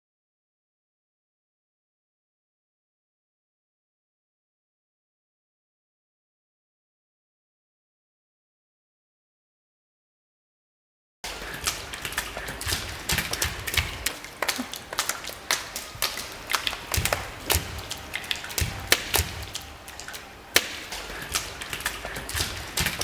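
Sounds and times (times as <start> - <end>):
faint rain hiss: 11.3 - 23.0
raindrops tapping hard surface: 11.3 - 23.0.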